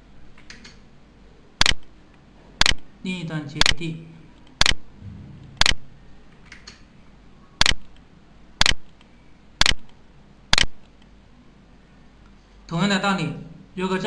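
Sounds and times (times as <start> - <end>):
computer mouse clicking: 0.4 - 0.8, 1.6 - 1.9, 4.4 - 4.8, 5.5 - 6.9, 7.6 - 9.9, 10.5 - 11.1.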